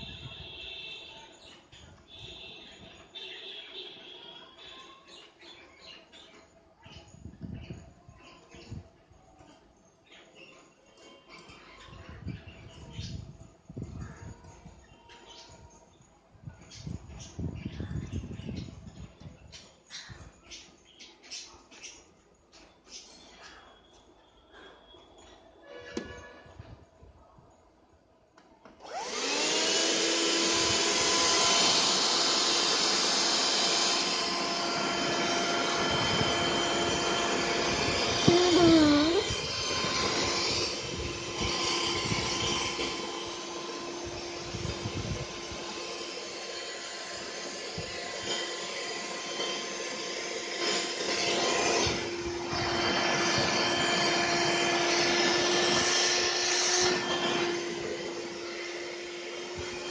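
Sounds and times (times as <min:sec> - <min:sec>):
vacuum cleaner whining: 0:28.8 - 0:59.9.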